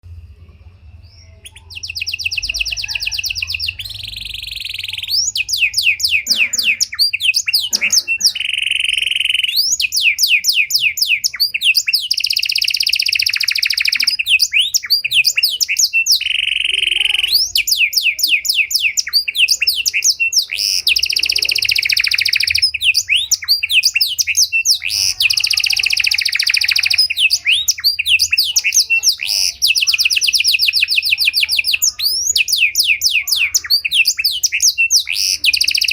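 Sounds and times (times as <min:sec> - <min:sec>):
canary singing: 0:00.8 - 0:35.9.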